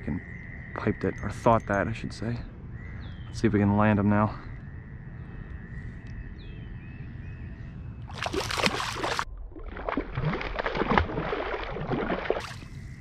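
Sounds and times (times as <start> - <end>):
faint bird chirps: 0.0 - 8.1
water splashing from thrashing fish: 8.1 - 12.7.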